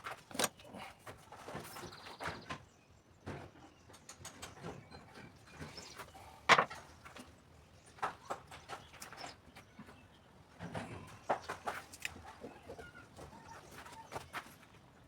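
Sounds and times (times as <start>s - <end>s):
clicks and knocks of objects handled: 0.0s - 2.7s, 6.5s - 7.3s, 10.6s - 12.5s.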